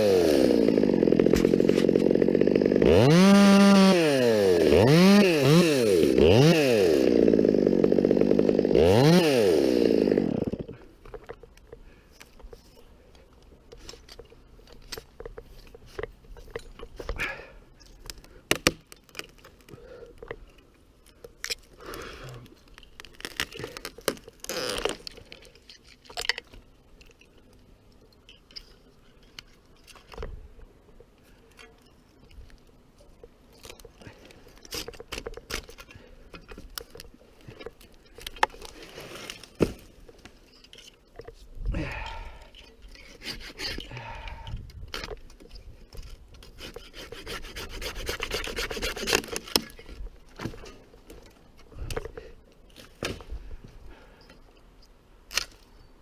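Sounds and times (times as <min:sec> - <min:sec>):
chainsaw revving: 0:00.0 - 0:10.8
cracks crunches and knocks: 0:17.9 - 0:27.6.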